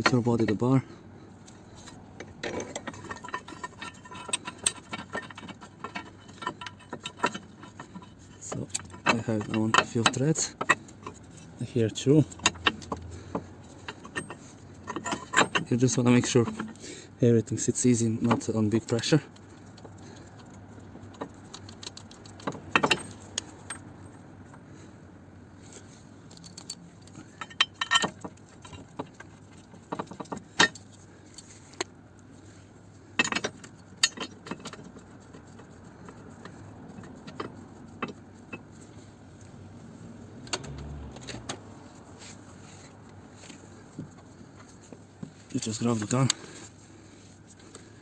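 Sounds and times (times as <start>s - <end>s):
metallic clinks of bolts and tools: 1.8s - 16.8s, 18.2s - 24.6s, 25.8s - 31.9s, 33.2s - 39.6s.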